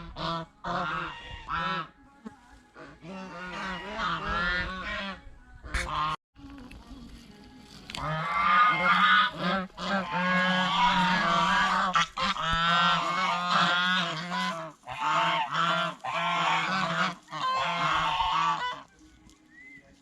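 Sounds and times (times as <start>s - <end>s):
geese honking: 0.0s - 2.0s, 2.6s - 6.2s, 7.8s - 19.7s.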